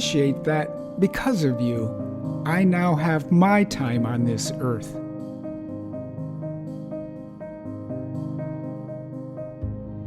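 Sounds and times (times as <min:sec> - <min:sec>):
soft keyboard background music: 0:00.0 - 0:10.0.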